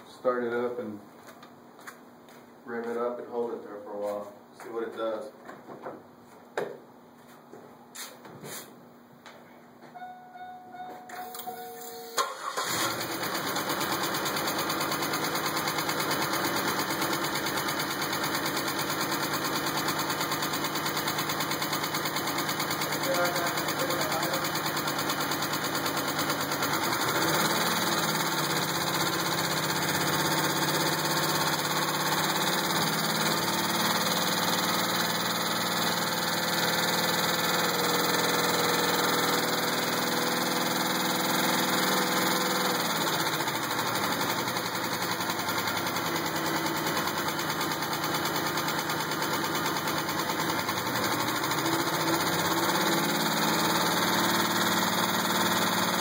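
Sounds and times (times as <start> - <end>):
engine knocking: 12.7 - 56.0.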